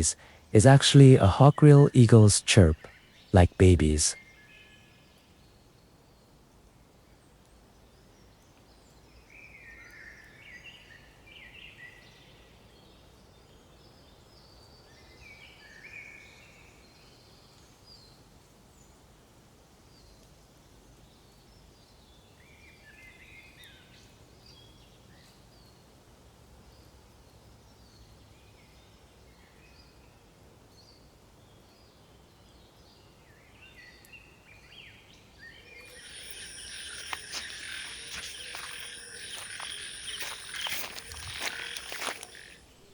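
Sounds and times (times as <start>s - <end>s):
faint steady hiss: 35.8s - 42.9s
eagle chittering chirps: 35.9s - 42.9s.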